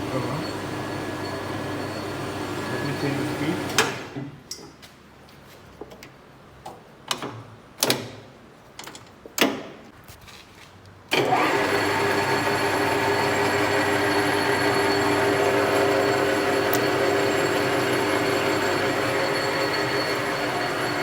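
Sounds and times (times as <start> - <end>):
lathe running with whining hum: 0.0 - 4.1, 11.2 - 21.0
lathe levers clicking and clunking: 3.6 - 4.1, 7.1 - 9.8.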